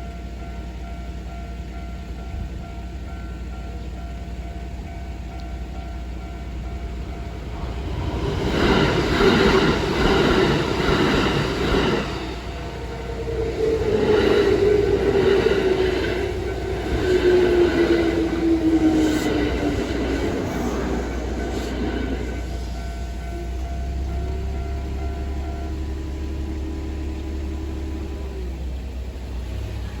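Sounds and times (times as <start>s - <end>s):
electric train motors whining: 0.0s - 30.0s
train wheels clattering over rail joints: 5.2s - 25.6s.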